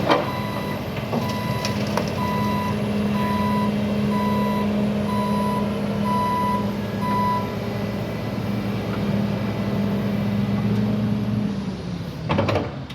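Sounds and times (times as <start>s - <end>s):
diesel engine running: 0.0s - 12.9s
reversing alarm beeps: 0.2s - 7.6s.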